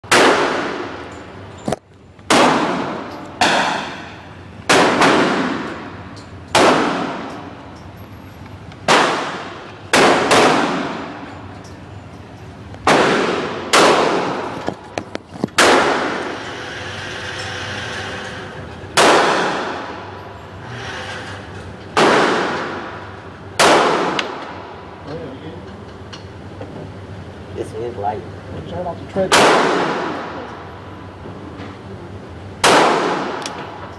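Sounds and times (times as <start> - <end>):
pistol shots echoing indoors: 0.1 - 1.2, 2.3 - 7.6, 8.8 - 11.3, 12.8 - 14.6, 15.6 - 16.4, 19.0 - 20.2, 22.0 - 24.7, 29.3 - 30.3, 32.6 - 33.9.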